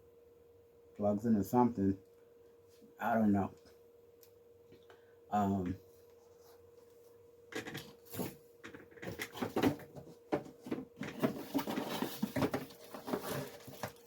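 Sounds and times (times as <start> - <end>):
packaging rustling and clicking: 7.6 - 14.0.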